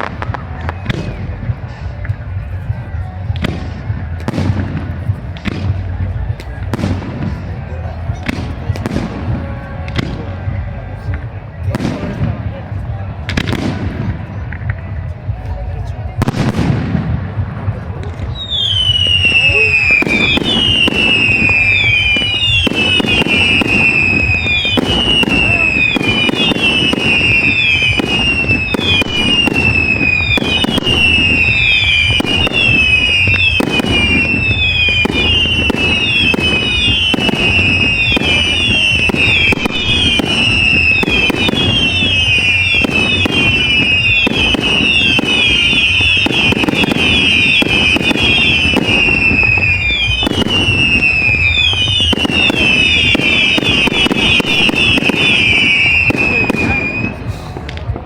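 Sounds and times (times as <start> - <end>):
fireworks bangs and crackle: 0.0 - 58.0
falling firework whistles: 18.3 - 57.7.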